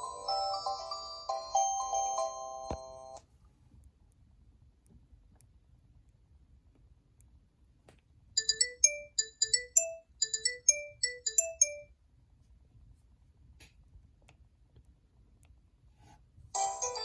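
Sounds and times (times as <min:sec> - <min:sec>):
electronic phone ringtone: 0:00.0 - 0:03.2, 0:08.4 - 0:11.9, 0:16.6 - 0:17.0.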